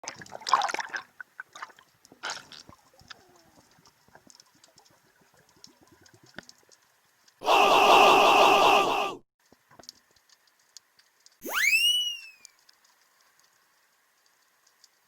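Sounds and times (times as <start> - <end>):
underwater bubbling and gurgling: 0.0 - 7.4.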